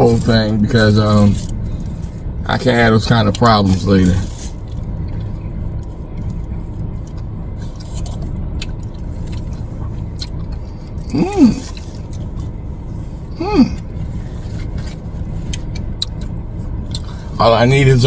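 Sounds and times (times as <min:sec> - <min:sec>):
steady low rumble: 0:00.0 - 0:18.0
man humming mmm: 0:11.0 - 0:11.8, 0:13.3 - 0:13.9.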